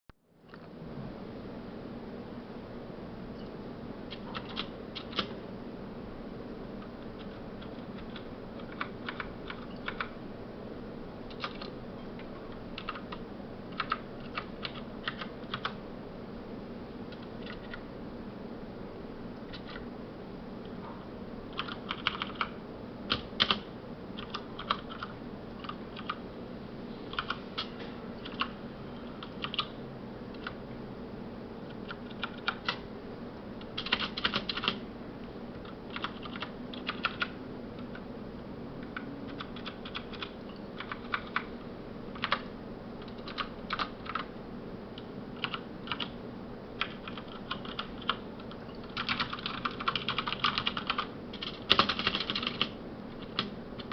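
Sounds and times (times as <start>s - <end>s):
mechanical keyboard typing: 4.1s - 5.4s, 6.9s - 10.2s, 11.3s - 11.8s, 12.8s - 15.8s, 17.1s - 17.8s, 21.5s - 26.2s, 27.1s - 28.5s, 29.1s - 29.7s, 31.7s - 32.8s, 33.6s - 34.8s, 35.6s - 37.9s, 38.8s - 41.5s, 42.2s - 44.3s, 45.4s - 46.2s, 46.8s - 53.9s.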